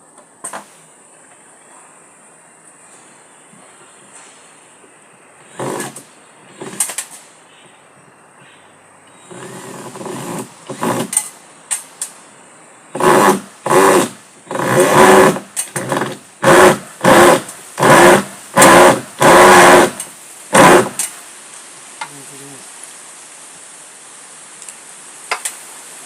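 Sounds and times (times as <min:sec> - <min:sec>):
cordless drill driving screws: 0:13.0 - 0:21.1.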